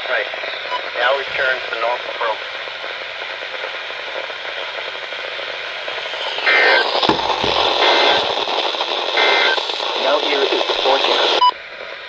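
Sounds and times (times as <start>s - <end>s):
radio static hiss: 0.0s - 3.0s
low thumps: 7.1s - 8.4s.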